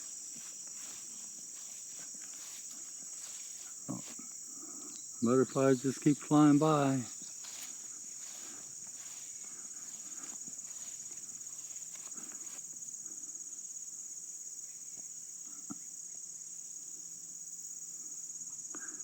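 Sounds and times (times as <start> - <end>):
crickets shrilling: 0.0 - 14.8.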